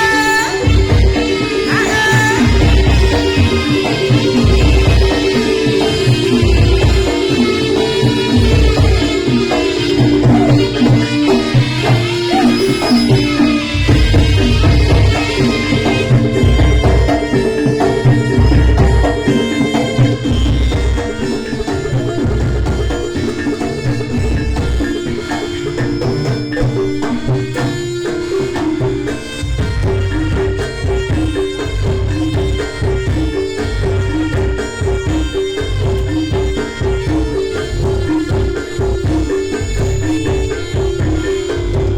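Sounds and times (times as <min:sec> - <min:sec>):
hand drums beating: 0:00.0 - 0:41.9
metal percussion melody: 0:00.0 - 0:41.9.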